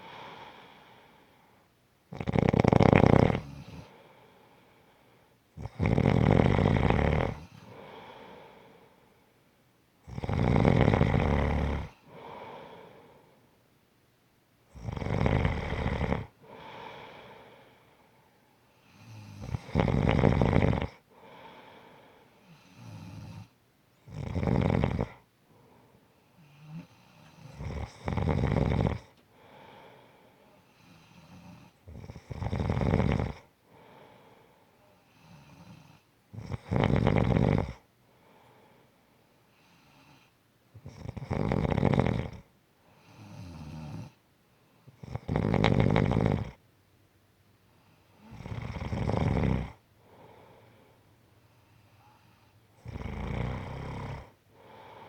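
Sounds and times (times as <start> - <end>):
person snoring: 2.1 - 4.1, 5.6 - 8.9, 10.1 - 13.2, 14.7 - 17.9, 19.0 - 23.5, 24.1 - 25.2, 26.5 - 30.2, 30.8 - 34.3, 35.1 - 37.8, 40.8 - 42.5, 45.0 - 46.6, 48.2 - 50.8, 52.0 - 55.0.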